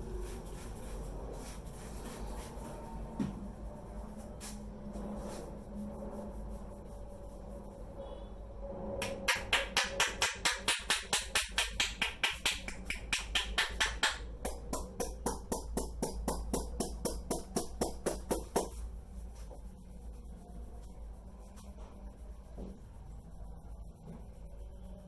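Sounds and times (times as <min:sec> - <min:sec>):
soft rubbing sounds: 0:00.0 - 0:08.2, 0:18.1 - 0:25.0
hands tapping on head: 0:09.0 - 0:18.8.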